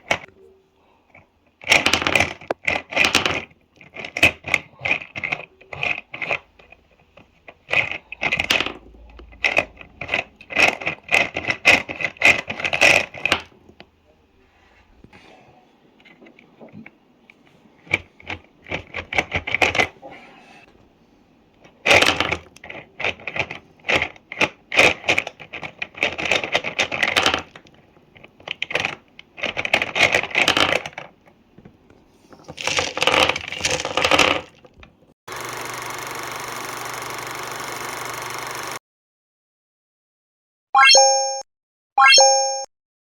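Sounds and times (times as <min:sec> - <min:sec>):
gumball machine clicking and rattling: 0:01.1 - 0:13.5, 0:17.8 - 0:19.9, 0:21.6 - 0:31.3, 0:32.4 - 0:38.8.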